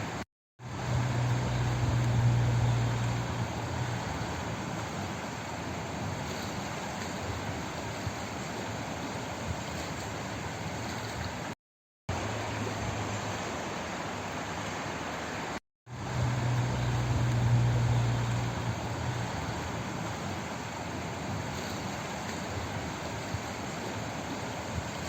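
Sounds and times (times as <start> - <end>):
flowing water rushing: 0.0 - 25.0
low hum: 0.6 - 4.8, 15.9 - 20.2.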